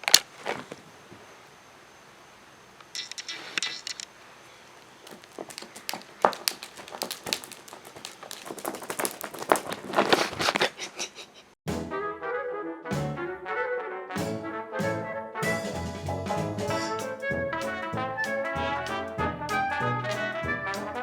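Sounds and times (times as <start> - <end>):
cat toy rustling and clicking: 5.0 - 10.8.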